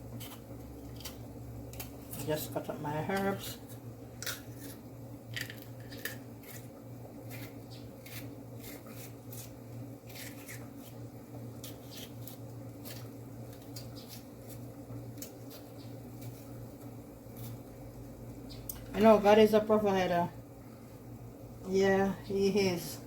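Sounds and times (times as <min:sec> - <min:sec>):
steady low hum: 0:00.0 - 0:23.0
knife slicing herbs: 0:05.9 - 0:16.6.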